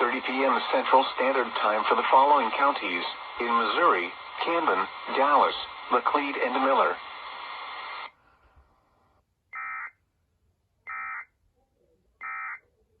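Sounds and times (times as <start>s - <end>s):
broadcast hiss: 0.0s - 9.7s.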